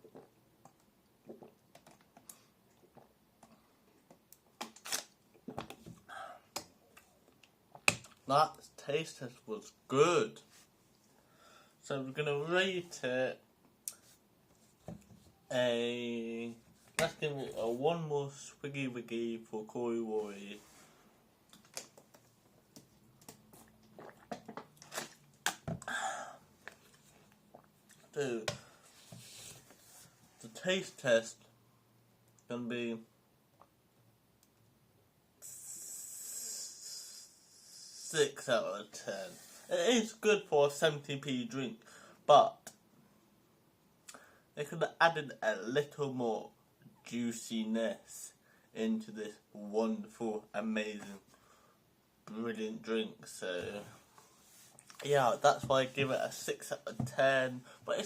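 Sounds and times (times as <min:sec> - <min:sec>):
mouth clicks and swallows: 0:23.2 - 0:25.6
person sipping: 0:23.5 - 0:25.2
person swallowing: 0:23.8 - 0:24.8.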